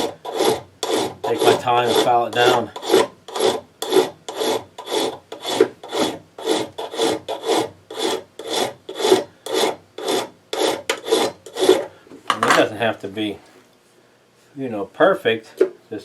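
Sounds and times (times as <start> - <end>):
hand file rasping on metal: 0.0 - 11.9.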